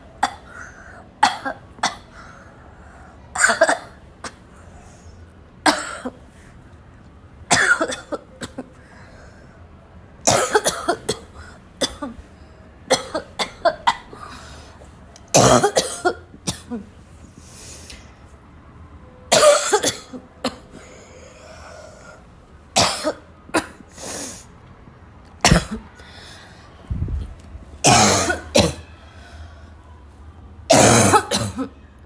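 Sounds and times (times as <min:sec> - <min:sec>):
person coughing harshly: 0:00.2 - 0:02.2, 0:03.4 - 0:04.4, 0:05.6 - 0:06.2, 0:07.5 - 0:08.8, 0:10.3 - 0:12.3, 0:12.9 - 0:14.5, 0:15.3 - 0:16.9, 0:19.3 - 0:20.9, 0:22.8 - 0:24.4, 0:25.4 - 0:25.9, 0:27.8 - 0:28.9, 0:30.7 - 0:31.7
person breathing: 0:08.8 - 0:09.7, 0:20.8 - 0:22.3, 0:26.0 - 0:26.8, 0:28.9 - 0:29.8.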